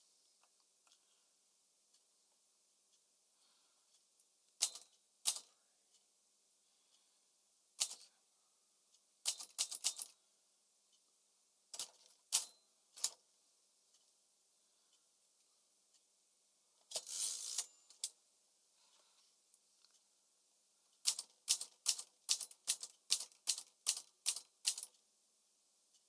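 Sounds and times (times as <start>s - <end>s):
typewriter key strikes: 9.2s - 10.1s, 21.0s - 24.9s.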